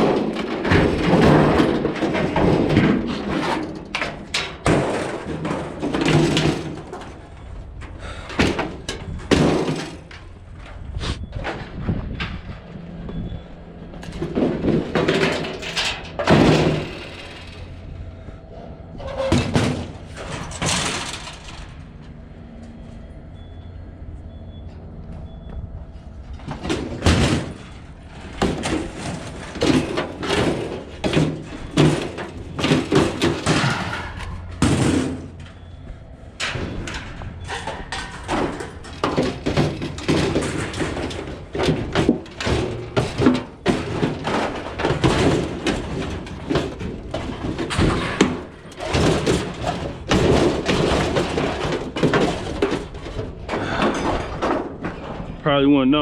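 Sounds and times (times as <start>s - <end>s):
sheet metal clanking and rattling: 0.0s - 12.7s, 13.3s - 22.4s, 26.2s - 55.8s.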